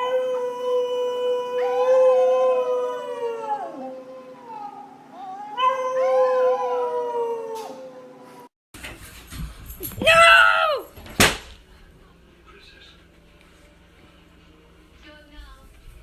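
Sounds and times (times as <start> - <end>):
dog howling: 0.0 - 8.5, 10.0 - 10.9.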